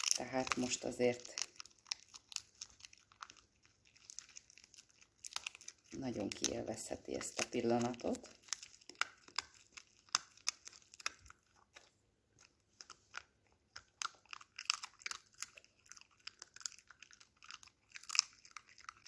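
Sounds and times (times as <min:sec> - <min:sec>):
small dog chewing: 0:00.0 - 0:19.0.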